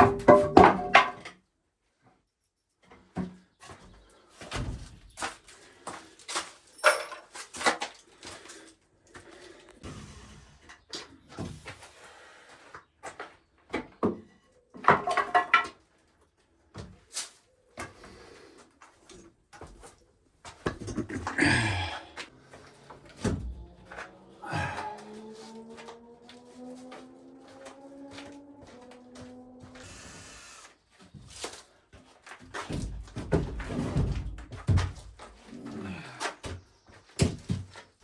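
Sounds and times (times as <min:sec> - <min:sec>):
wooden shelving knocks and thuds: 0:00.0 - 0:01.2, 0:32.5 - 0:35.2.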